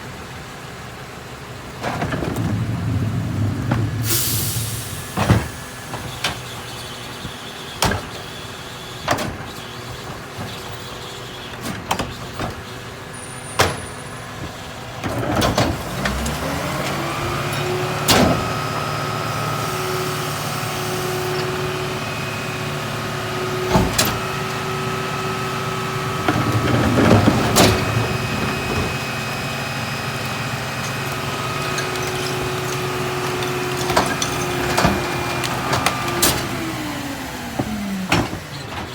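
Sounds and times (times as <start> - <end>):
hydraulic packer whine: 1.5 - 8.9, 12.6 - 38.9
knocks and clatter: 1.8 - 6.4.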